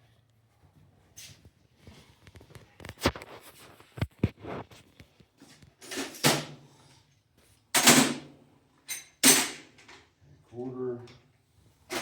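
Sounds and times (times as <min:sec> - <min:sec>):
tools clattering in metal toolbox: 0:05.8 - 0:06.5, 0:07.8 - 0:08.2, 0:08.9 - 0:10.0.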